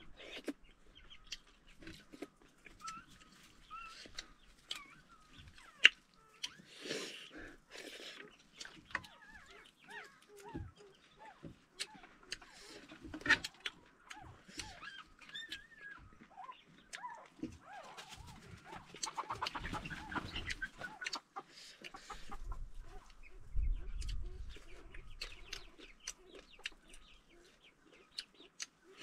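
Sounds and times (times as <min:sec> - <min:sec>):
chewing and crunching: 0:00.0 - 0:29.0
high-pitched animal calls: 0:02.7 - 0:06.7, 0:08.9 - 0:21.2.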